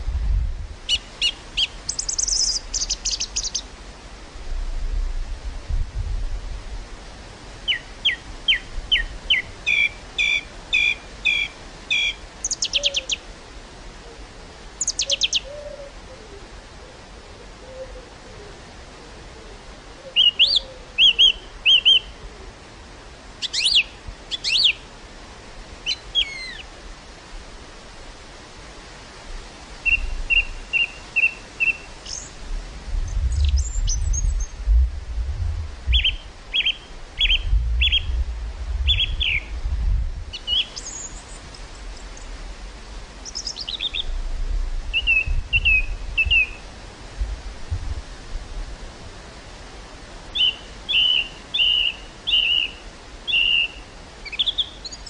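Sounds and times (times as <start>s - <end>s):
wind buffeting microphone: 0.0s - 0.9s, 4.3s - 7.6s, 32.3s - 40.8s, 43.8s - 49.1s
steady outdoor hiss: 0.0s - 55.0s
small birds chirping: 0.9s - 3.7s, 7.7s - 13.2s, 14.8s - 15.5s, 23.4s - 24.8s, 29.8s - 32.4s, 33.1s - 34.6s, 35.9s - 38.2s, 38.8s - 39.5s, 40.3s - 42.4s, 43.2s - 44.2s, 50.3s - 55.0s.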